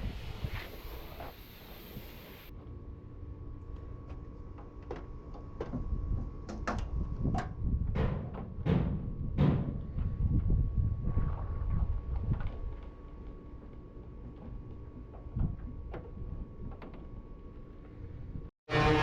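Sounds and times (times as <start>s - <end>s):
knocks and clunks: 6.5s - 10.1s.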